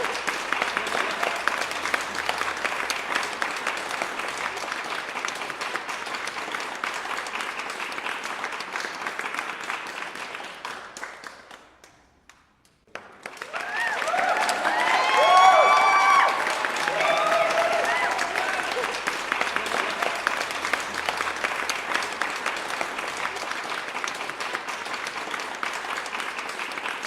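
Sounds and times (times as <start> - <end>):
crowd screaming and cheering: 0.0 - 3.0, 13.4 - 23.2
crowd applauding: 0.0 - 27.0.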